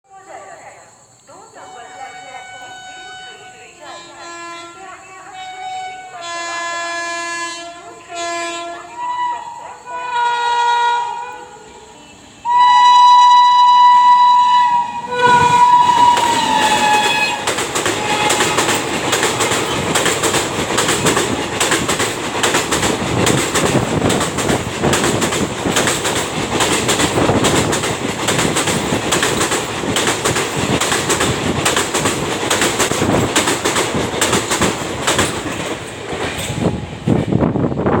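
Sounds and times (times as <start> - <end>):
locomotive horn blasts: 1.6 - 19.9
train rushing rumble: 8.7 - 38.0
wheels clattering over rail joints: 15.1 - 37.3.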